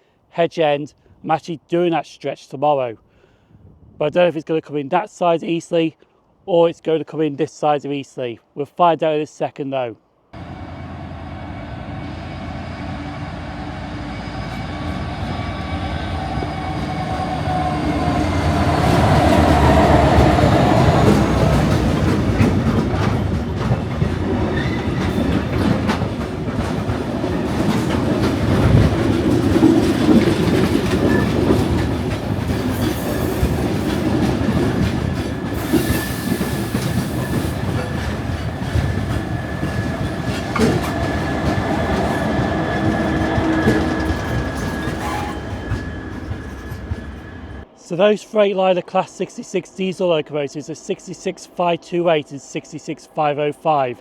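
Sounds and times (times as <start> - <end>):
diesel locomotive engines: 10.4 - 53.7
wagons clacking over rail joints: 16.1 - 47.6
thin high squeal: 43.6 - 47.6.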